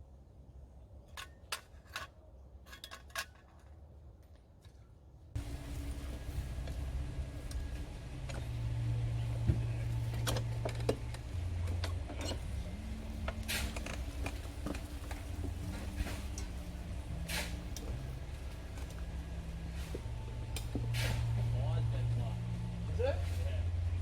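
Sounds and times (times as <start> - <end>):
engine humming: 5.4 - 24.0.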